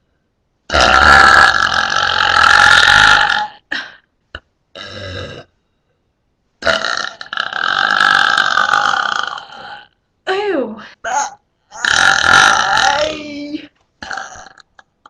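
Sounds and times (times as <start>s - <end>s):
person burping: 0.7s - 3.9s, 4.7s - 5.5s, 6.6s - 9.9s, 11.0s - 15.0s.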